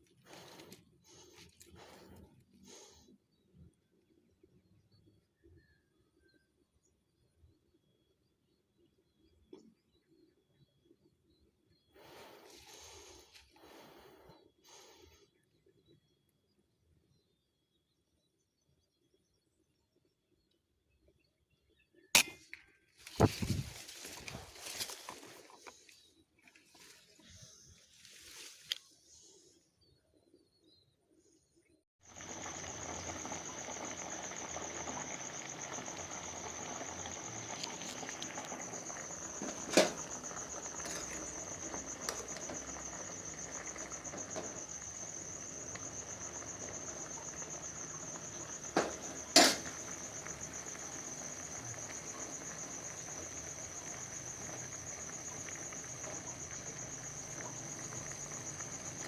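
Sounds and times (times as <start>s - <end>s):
sharp cracks: 22.2s - 22.4s
insects trilling: 23.1s - 25.8s, 32.0s - 59.0s.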